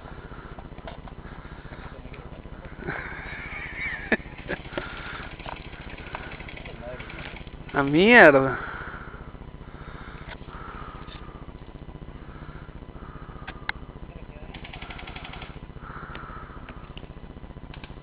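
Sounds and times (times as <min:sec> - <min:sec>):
steady low rumble: 0:00.0 - 0:18.0
airsoft guns firing: 0:04.4 - 0:08.3, 0:14.5 - 0:15.6.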